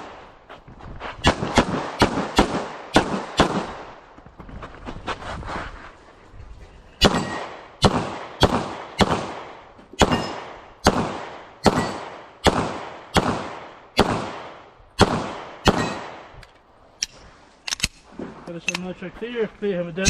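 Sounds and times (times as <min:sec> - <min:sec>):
pistol shots echoing: 0:01.2 - 0:03.9, 0:07.0 - 0:16.3.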